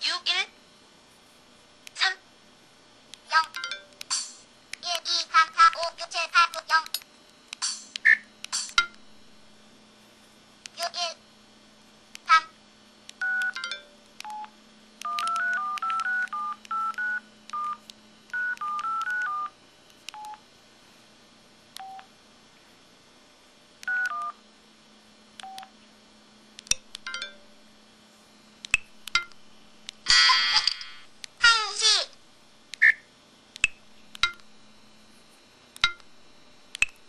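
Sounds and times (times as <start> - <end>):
phone keypad dial beeps: 13.2 - 20.4, 21.8 - 22.1, 23.8 - 24.4, 25.4 - 25.7.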